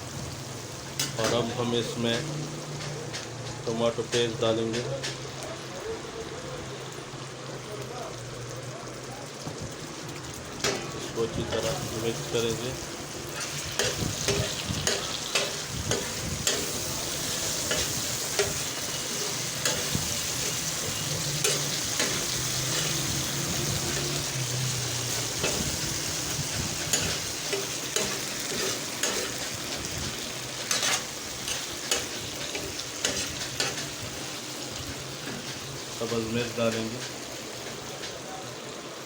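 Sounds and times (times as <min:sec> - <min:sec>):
chicken sizzling in pan: 0:00.0 - 0:39.0
spatula knocking and scraping pan: 0:13.3 - 0:23.0.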